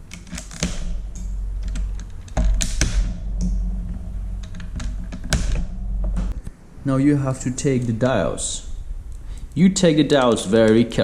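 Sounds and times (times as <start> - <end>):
sharp clicks and taps of plastic parts: 0.0 - 3.6
low rumbling handling noise: 0.0 - 6.5, 7.2 - 11.0.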